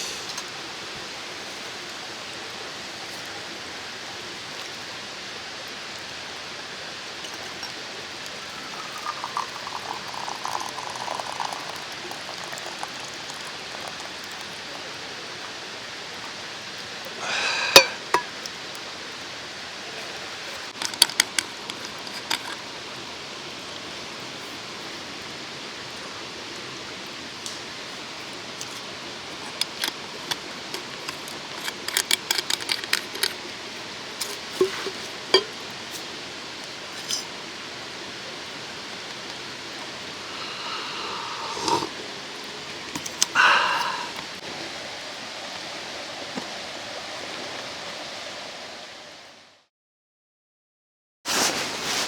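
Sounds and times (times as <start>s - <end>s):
mountain stream rushing: 0.0s - 49.4s
liquid being poured: 7.1s - 14.8s, 17.7s - 18.6s, 20.7s - 22.7s, 39.8s - 44.4s.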